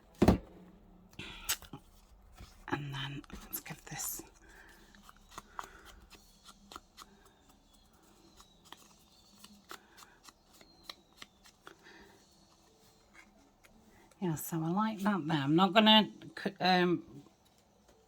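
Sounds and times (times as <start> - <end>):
paper and card rustling: 1.6 - 14.2.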